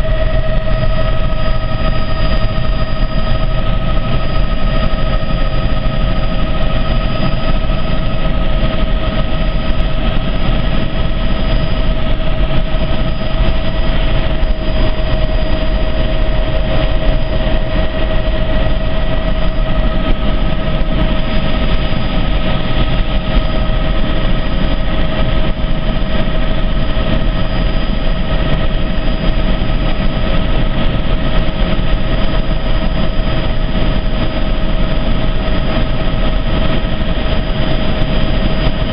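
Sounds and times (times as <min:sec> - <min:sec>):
helicopter engine and rotor noise: 0:00.0 - 0:38.9
high whine: 0:00.0 - 0:38.9.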